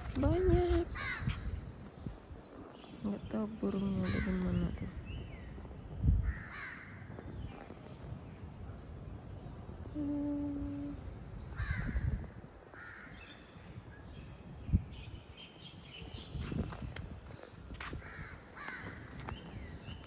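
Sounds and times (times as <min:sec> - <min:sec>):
small birds chirping: 0:00.0 - 0:20.0
crows cawing: 0:06.3 - 0:06.9, 0:18.1 - 0:19.1.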